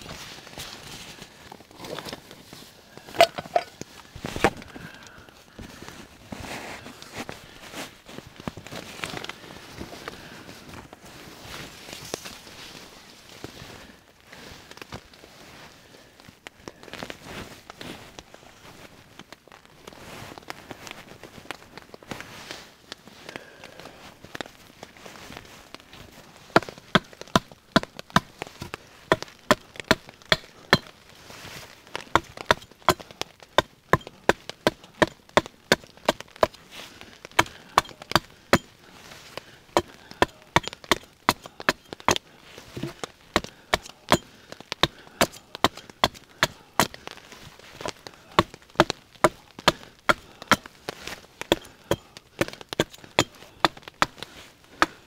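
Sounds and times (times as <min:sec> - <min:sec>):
wood knocking: 0:03.2 - 0:03.7.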